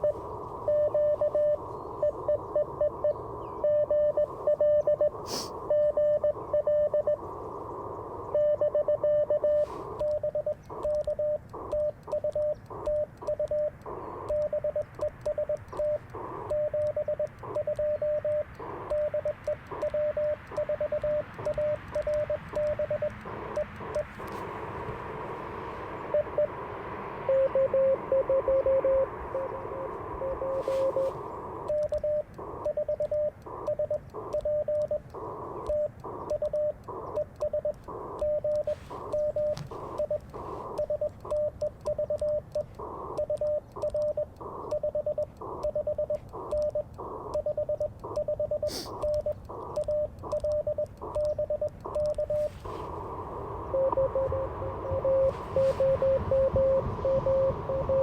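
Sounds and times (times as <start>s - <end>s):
morse code beeps: 0.0s - 7.2s, 7.9s - 58.0s
receiver hiss: 0.0s - 58.0s.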